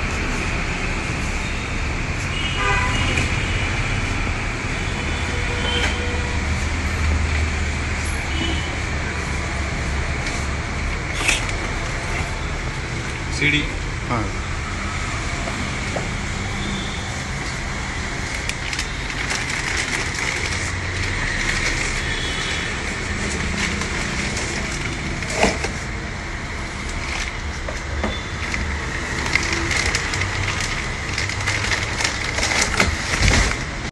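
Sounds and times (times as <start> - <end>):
steady background noise: 0.0 - 33.9
packaging crinkling: 18.2 - 25.9, 26.8 - 33.9.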